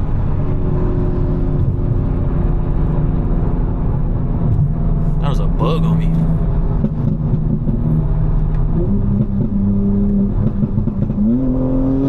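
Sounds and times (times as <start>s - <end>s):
car engine cruising and accelerating: 0.0s - 12.0s.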